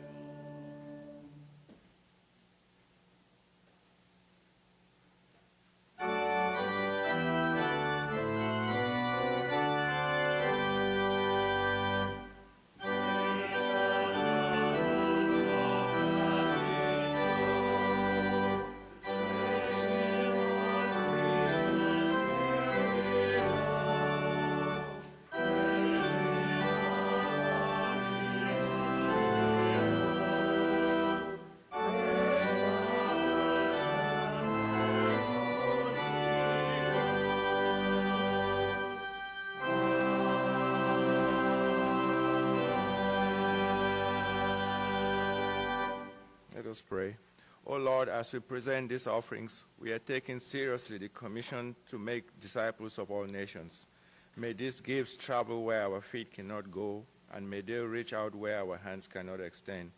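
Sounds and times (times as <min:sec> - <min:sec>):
organ playing chords: 0:00.0 - 0:01.6, 0:06.0 - 0:46.7.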